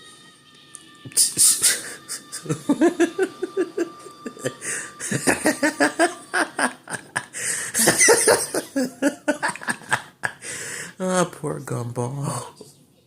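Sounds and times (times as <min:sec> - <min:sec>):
cartoon character laughing: 0:01.7 - 0:10.4
loud breathy rush: 0:04.5 - 0:05.2, 0:07.3 - 0:07.9, 0:10.4 - 0:11.0.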